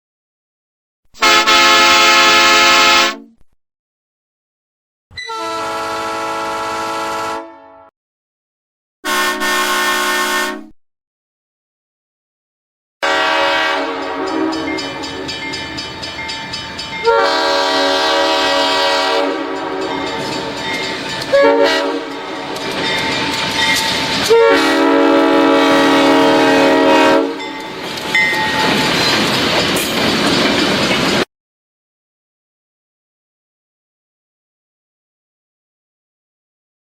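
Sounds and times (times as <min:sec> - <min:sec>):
train horn blasts: 0:01.2 - 0:03.4, 0:05.2 - 0:07.9, 0:09.0 - 0:10.7, 0:13.0 - 0:15.4, 0:17.0 - 0:27.8
passing train rumble and clatter: 0:13.1 - 0:31.3.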